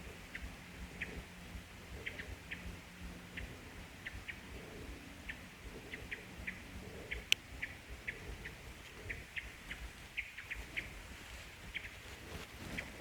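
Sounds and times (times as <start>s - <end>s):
faint low rumble: 0.0s - 13.0s.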